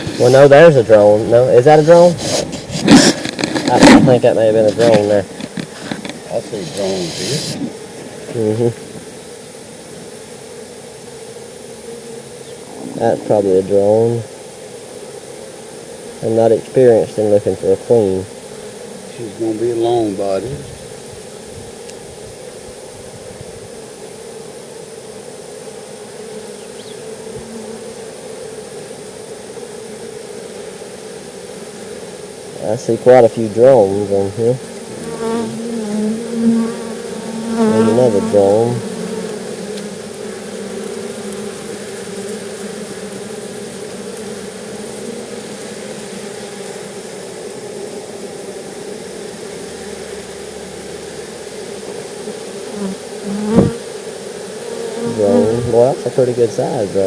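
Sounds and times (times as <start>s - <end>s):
bees humming: 0.0s - 57.0s
honeybees buzzing: 0.0s - 57.0s
hiss: 1.7s - 3.8s, 4.6s - 7.8s.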